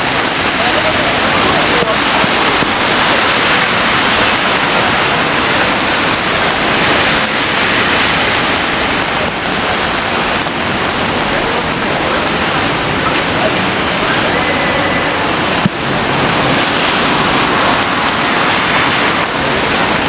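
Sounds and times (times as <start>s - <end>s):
heavy rain on street: 0.0s - 20.0s.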